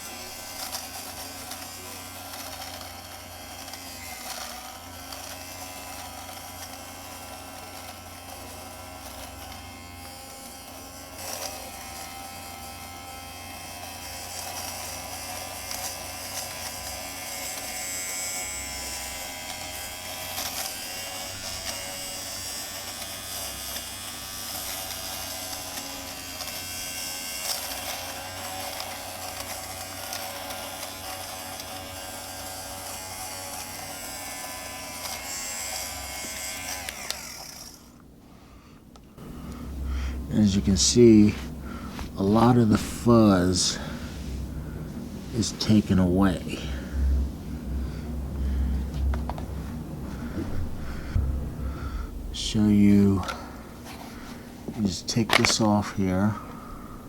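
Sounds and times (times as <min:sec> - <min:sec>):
lint remover motor buzzing: 0:00.0 - 0:38.2, 0:53.2 - 0:56.8.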